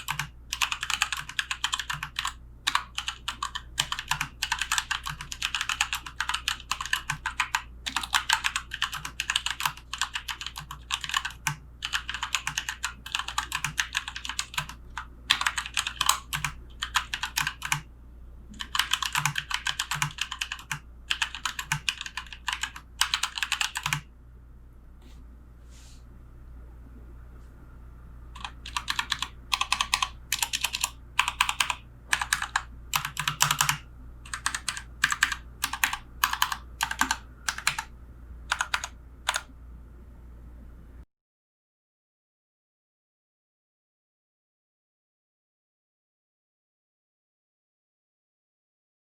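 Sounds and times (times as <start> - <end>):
mechanical keyboard typing: 0.0 - 17.9, 18.6 - 24.0, 28.4 - 37.9, 38.5 - 39.5.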